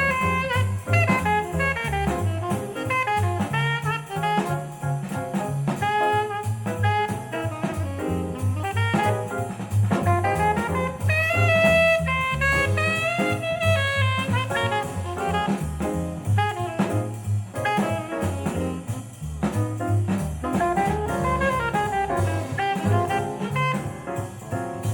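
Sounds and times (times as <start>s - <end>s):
drum kit: 0.0s - 24.9s
saxophone or brass melody: 0.0s - 24.9s
walking bass: 0.0s - 24.9s.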